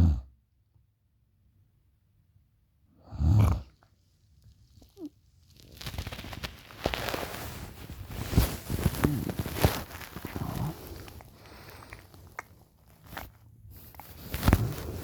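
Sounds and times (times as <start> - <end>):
loud short snore: 3.0 - 3.7.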